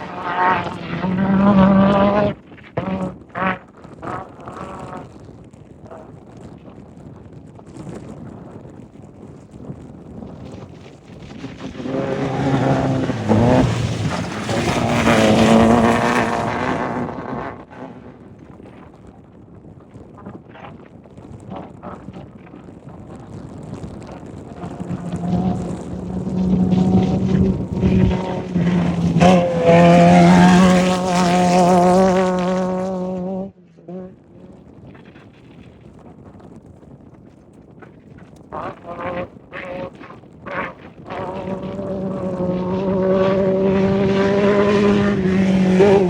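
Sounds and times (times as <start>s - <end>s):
race vehicle engine passing: 0.0s - 5.0s, 11.4s - 18.1s, 24.5s - 34.6s, 38.6s - 46.0s.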